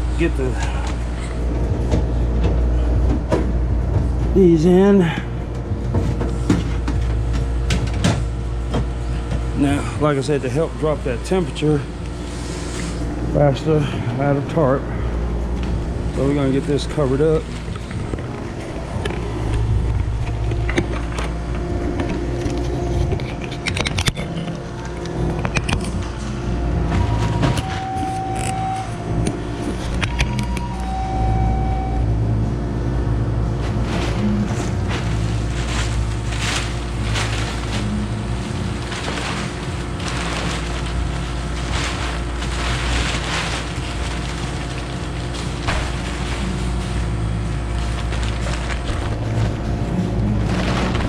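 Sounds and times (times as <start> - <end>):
refrigeration unit humming: 0.0 - 51.0
plastic tarp crackling: 33.6 - 51.0.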